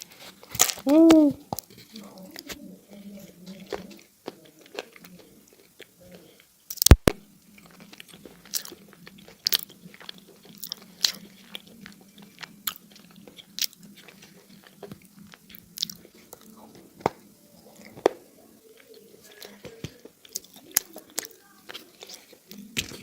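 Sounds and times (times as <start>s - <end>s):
biting and crunching dry clay: 6.7s - 17.2s.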